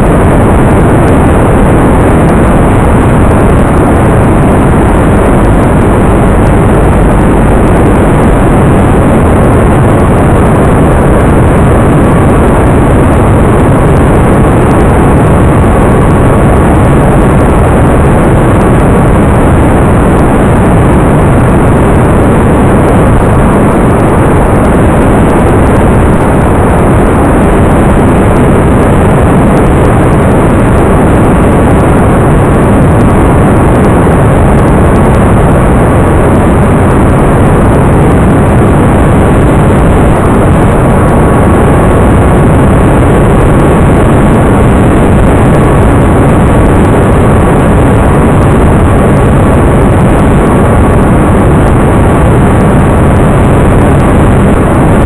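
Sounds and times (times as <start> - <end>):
faint steady whine: 0.0 - 55.0.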